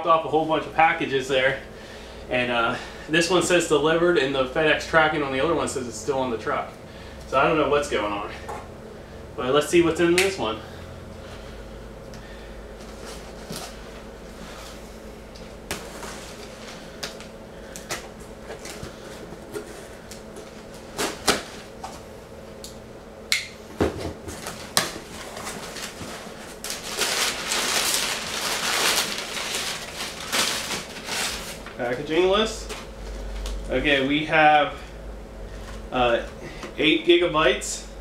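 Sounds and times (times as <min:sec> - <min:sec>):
packing material rustling: 0:24.2 - 0:33.6.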